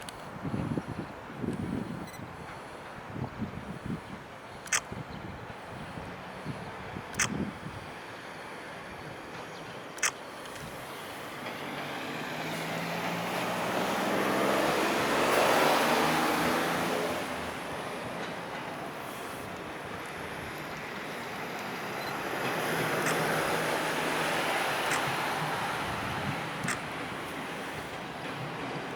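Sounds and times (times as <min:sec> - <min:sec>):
freight train rolling past: 0:10.8 - 0:28.9.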